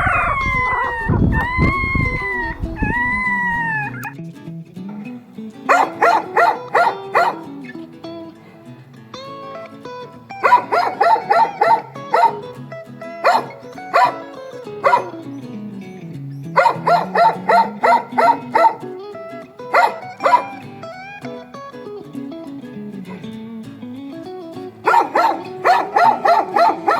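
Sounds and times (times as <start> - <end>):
background music with guitar: 0.0 - 26.9
dog barking: 4.9 - 7.6, 10.4 - 12.6, 13.2 - 15.2, 16.6 - 19.0, 19.7 - 20.7, 23.1 - 23.3, 24.8 - 26.9.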